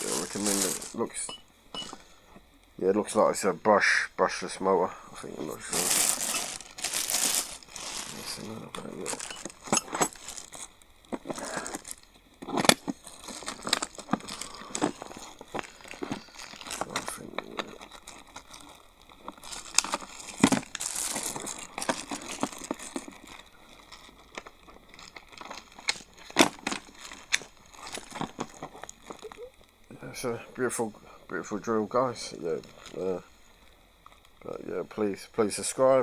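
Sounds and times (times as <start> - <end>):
plastic wrap crinkling: 0.0 - 2.0, 2.8 - 29.9, 31.4 - 35.2.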